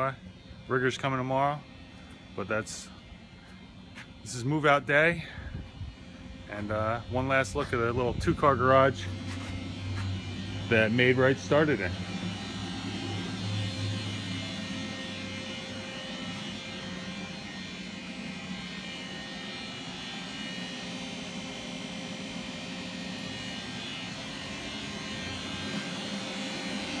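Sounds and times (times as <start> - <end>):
steady mechanical hum: 0.0 - 27.0.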